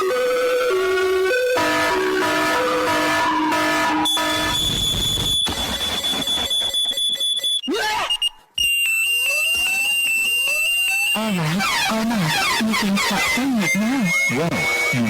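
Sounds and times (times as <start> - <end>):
pulsing electronic alarm tone: 1.1 - 11.4.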